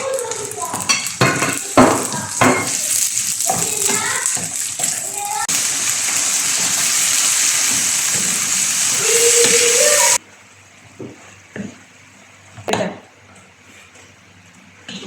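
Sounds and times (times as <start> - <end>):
food sizzling in oil: 0.0 - 10.2
kitchen utensils knocking: 0.7 - 2.8.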